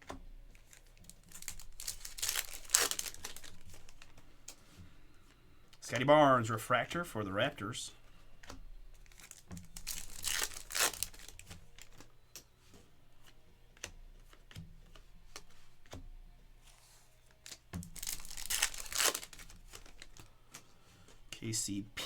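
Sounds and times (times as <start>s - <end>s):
foil wrapper tearing: 0.5s - 4.1s, 9.0s - 12.1s, 17.4s - 20.3s
wrapper crinkling: 0.5s - 4.2s, 9.0s - 12.1s, 17.3s - 20.3s.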